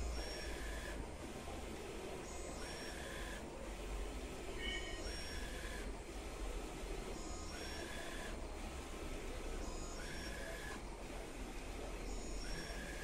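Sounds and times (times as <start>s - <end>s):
brief steady tone: 4.6s - 5.4s.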